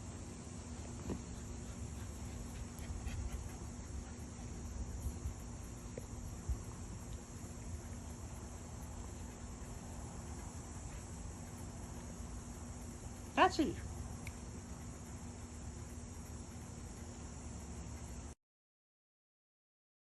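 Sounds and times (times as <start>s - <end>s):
low hum: 0.0s - 18.4s
faint ticks: 2.0s - 18.4s.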